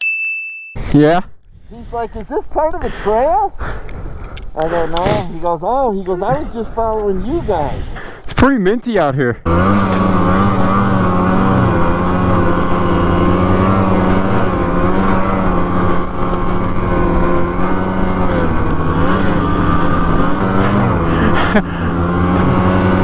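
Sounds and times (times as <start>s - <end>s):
snowmobile engine running: 4.7s - 7.9s, 9.5s - 23.0s.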